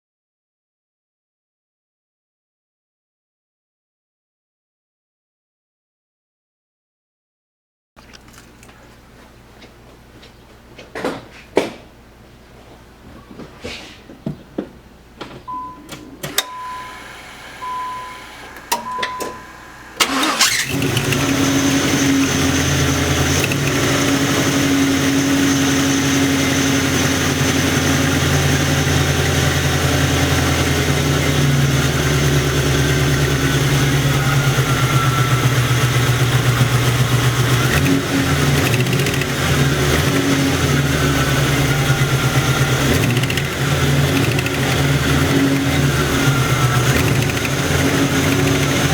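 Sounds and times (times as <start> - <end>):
clicks: 15.4 - 16.6, 18.4 - 21.5
electronic chime beep: 15.5 - 17.0, 17.6 - 19.6
car engine starting and idling: 15.5 - 48.9
engine knocking: 20.0 - 48.9.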